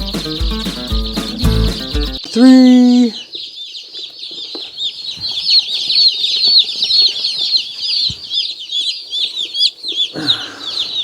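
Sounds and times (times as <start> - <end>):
baby chicks peeping: 0.0 - 11.0.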